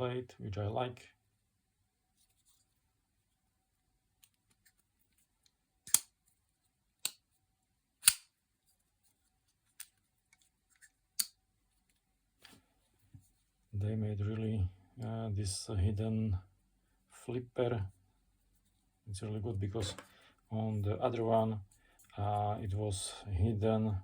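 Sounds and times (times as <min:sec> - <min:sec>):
pocket knife blade clicking: 0:08.0 - 0:08.2.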